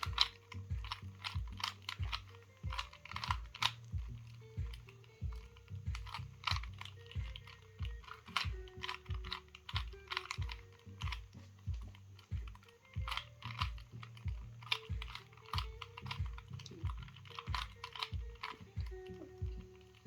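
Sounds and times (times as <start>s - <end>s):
background music with beat: 0.0s - 20.0s
plastic puzzle cube clicking: 0.0s - 20.0s.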